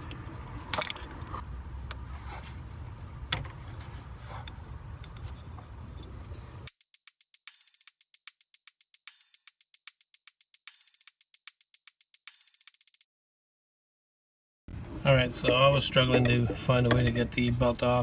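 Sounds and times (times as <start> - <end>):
hi-hat and tambourine beat: 6.7 - 13.1.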